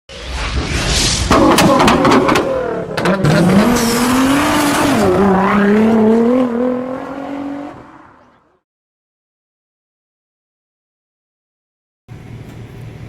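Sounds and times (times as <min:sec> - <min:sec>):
car engine revving: 0:01.3 - 0:08.4.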